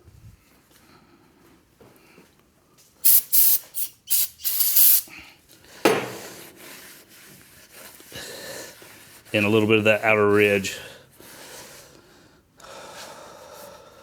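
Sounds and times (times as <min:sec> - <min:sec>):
spray hissing in bursts: 0:03.0 - 0:05.1.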